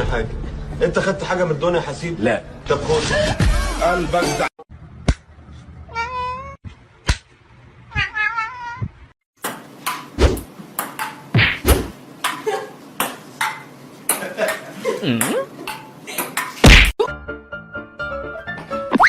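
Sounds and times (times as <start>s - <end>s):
cat meowing: 5.9s - 6.6s, 7.9s - 9.0s
sharp knocks and taps with ping: 9.4s - 12.4s, 13.0s - 14.6s.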